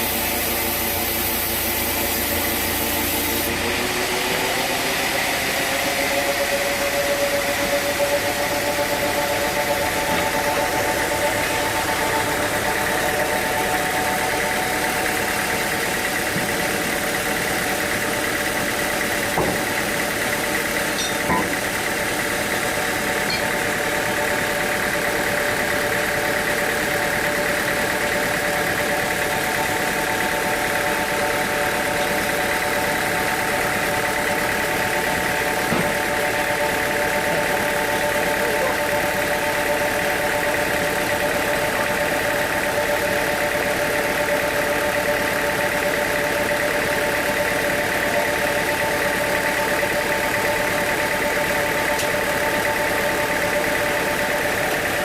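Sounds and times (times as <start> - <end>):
sawmill machinery humming: 0.0 - 55.0.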